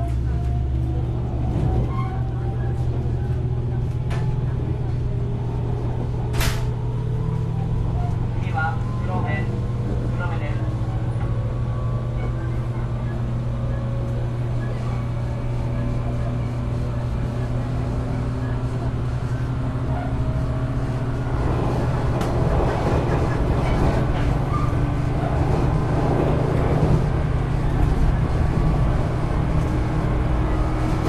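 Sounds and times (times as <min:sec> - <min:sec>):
train traction motors humming: 0:00.0 - 0:31.0
train wheels on rails: 0:18.9 - 0:31.0.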